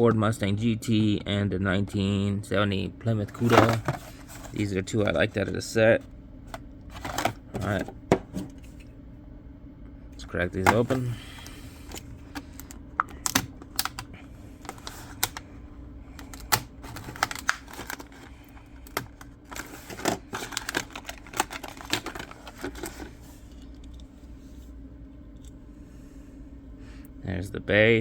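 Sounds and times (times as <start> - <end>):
plastic packaging being torn open: 16.2 - 23.1.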